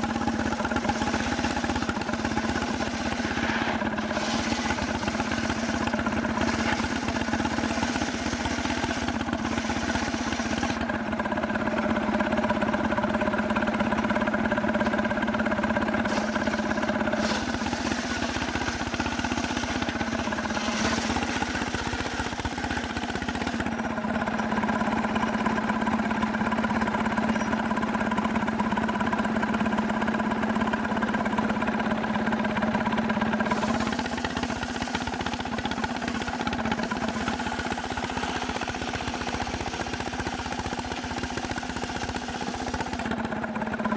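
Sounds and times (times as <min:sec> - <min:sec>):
chainsaw running at high speed: 0:00.0 - 0:43.9.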